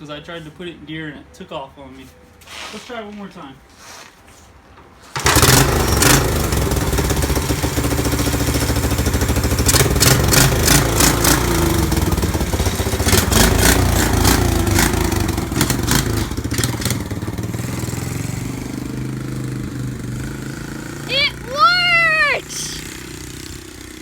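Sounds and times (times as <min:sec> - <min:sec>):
motorcycle engine revving: 0:05.2 - 0:21.1.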